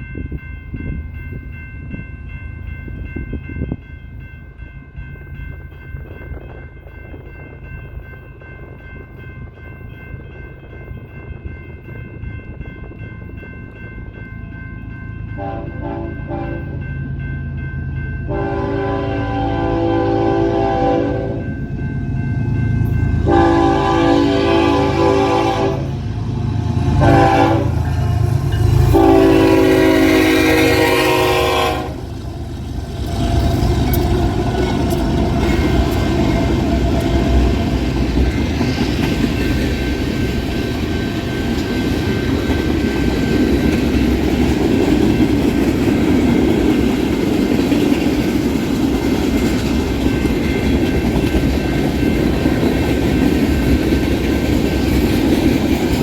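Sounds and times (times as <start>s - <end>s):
train rumbling past: 0.0s - 56.0s
locomotive air horn: 15.4s - 16.8s, 18.3s - 21.4s, 23.2s - 26.0s, 27.0s - 27.8s, 28.9s - 32.1s.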